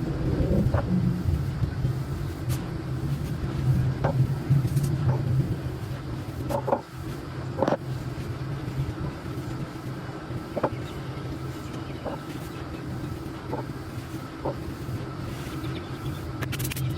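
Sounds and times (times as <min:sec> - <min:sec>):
steady low hum: 0:00.0 - 0:16.9.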